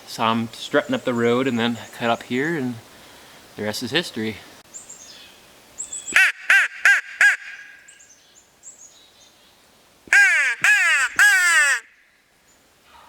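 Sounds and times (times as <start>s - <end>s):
small birds chirping: 0.1s - 2.8s, 3.6s - 6.3s
turkey yelps: 6.1s - 7.8s, 10.1s - 12.0s
turkey gobbling: 6.2s - 7.8s, 10.1s - 11.9s.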